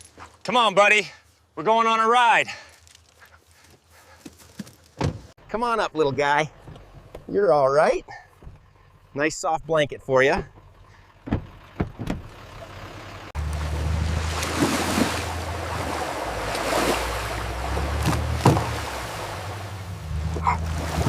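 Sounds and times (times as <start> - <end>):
vehicle engine running: 8.1 - 16.6
rushing wind or water: 13.4 - 21.0.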